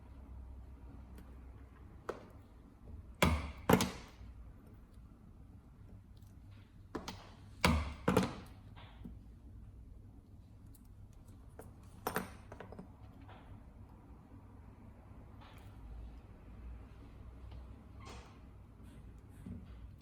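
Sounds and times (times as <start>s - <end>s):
chisel knocking through leather: 3.2s - 4.2s, 6.9s - 9.0s.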